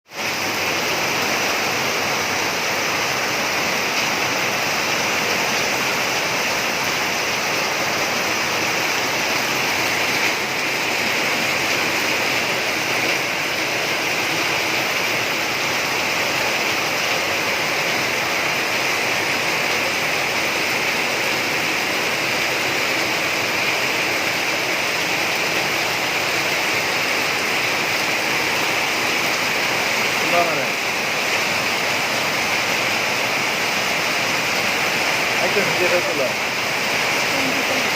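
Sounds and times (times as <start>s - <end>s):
heavy rain: 0.1s - 37.9s.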